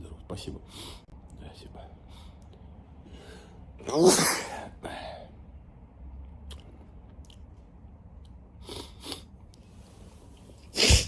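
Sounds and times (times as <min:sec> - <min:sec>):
low room hum: 0:00.0 - 0:11.0
faint mouth clicks: 0:06.4 - 0:07.5
man sniffing: 0:10.7 - 0:11.0.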